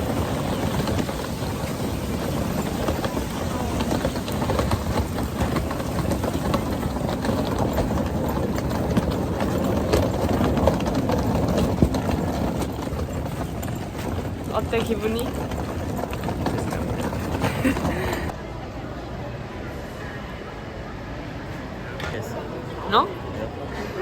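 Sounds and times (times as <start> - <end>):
vehicle engine rumbling: 0.0 - 18.4.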